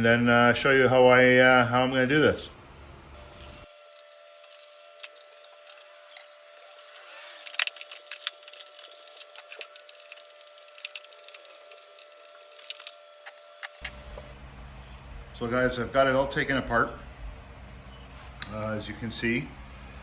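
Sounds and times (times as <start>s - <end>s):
plastic parts and tools clicking: 3.2s - 14.3s.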